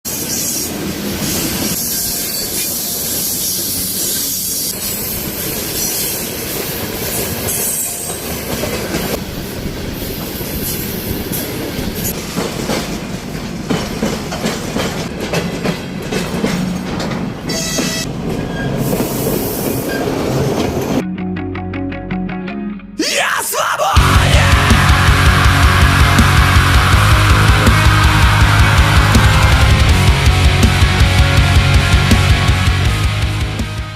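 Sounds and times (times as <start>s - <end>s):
wheels clattering over rail joints: 12.1s - 18.8s
train rumble: 24.0s - 33.9s.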